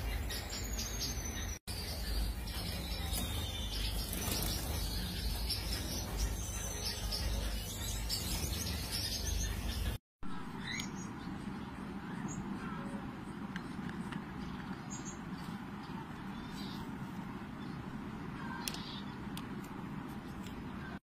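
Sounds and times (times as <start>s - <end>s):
finches chirping: 0.0s - 13.0s.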